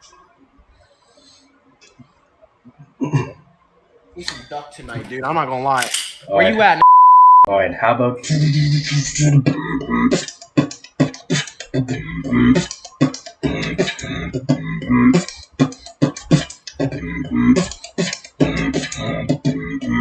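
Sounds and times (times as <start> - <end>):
person beatboxing: 8.2 - 20.0.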